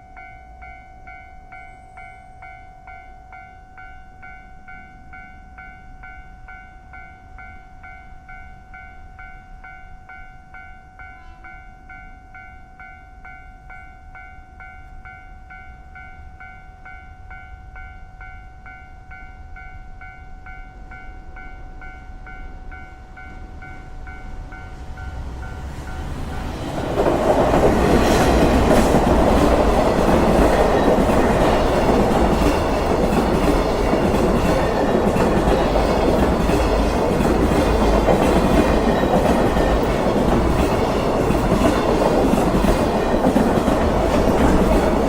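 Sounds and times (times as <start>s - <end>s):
level crossing warning bell: 0.0s - 45.0s
approaching train rumble: 21.2s - 45.0s.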